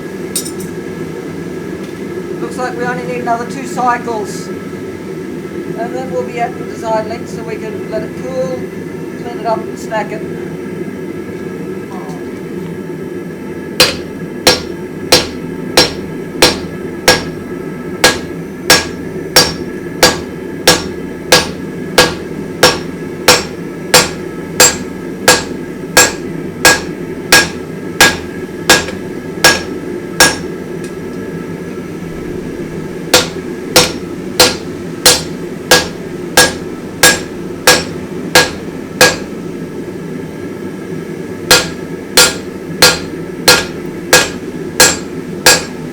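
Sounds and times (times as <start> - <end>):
hammer ringing on anvil: 0.4 - 0.8, 13.8 - 17.4, 18.0 - 30.5, 33.1 - 39.3, 41.5 - 45.8
steady rushing noise: 13.8 - 45.9.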